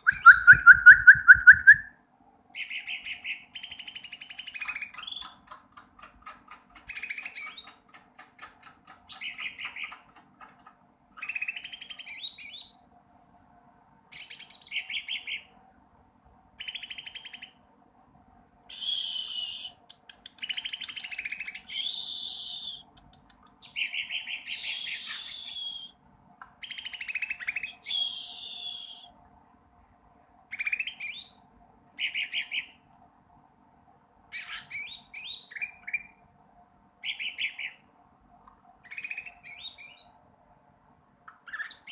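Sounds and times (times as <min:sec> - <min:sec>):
bird twittering: 0:00.0 - 0:01.9, 0:02.6 - 0:05.4, 0:06.9 - 0:07.8, 0:09.1 - 0:10.1
harsh buzzy bird calls: 0:02.6 - 0:12.7, 0:20.4 - 0:25.9.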